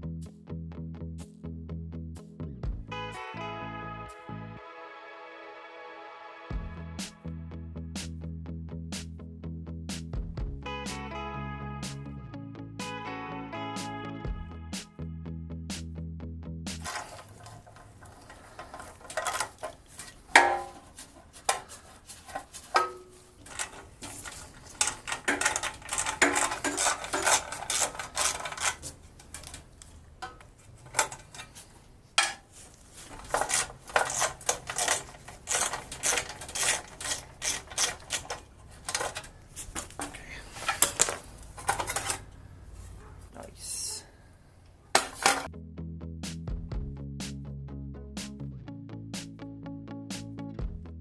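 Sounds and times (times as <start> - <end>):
metal tools clinking and clattering: 16.8 - 43.1, 45.0 - 45.5.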